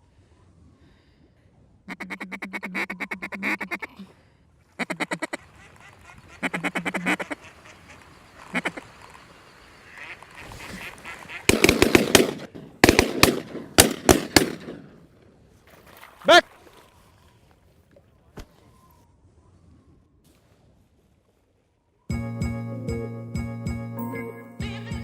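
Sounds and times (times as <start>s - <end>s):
ducks quacking: 1.9s - 4.0s, 4.7s - 9.2s, 9.8s - 11.6s
goose-like honks: 4.8s - 8.8s
sharp cracks and clatter: 11.5s - 15.0s.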